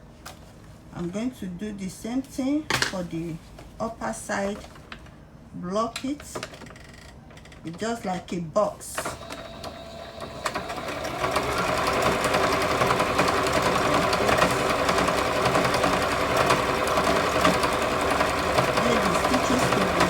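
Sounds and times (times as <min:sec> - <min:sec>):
sewing machine running fast: 0:09.1 - 0:20.0.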